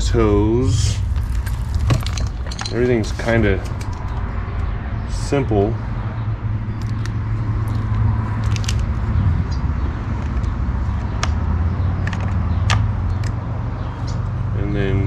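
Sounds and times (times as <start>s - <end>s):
steady low hum: 0.0s - 11.8s
plastic parts clicking: 6.8s - 8.9s, 12.0s - 13.4s.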